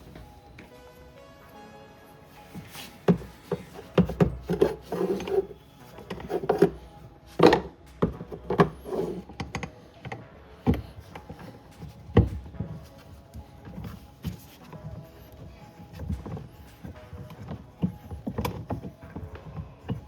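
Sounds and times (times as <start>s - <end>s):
rubbing: 2.4s - 6.9s, 10.8s - 20.0s
tools and hard parts knocking: 3.0s - 6.8s, 7.4s - 20.0s.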